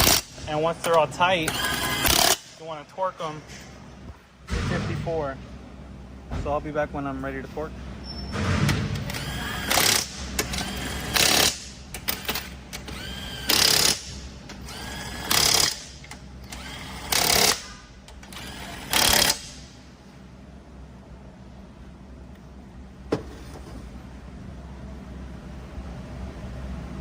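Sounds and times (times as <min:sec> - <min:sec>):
power tool bursts: 0:01.5 - 0:02.5, 0:09.0 - 0:15.9, 0:16.5 - 0:19.6.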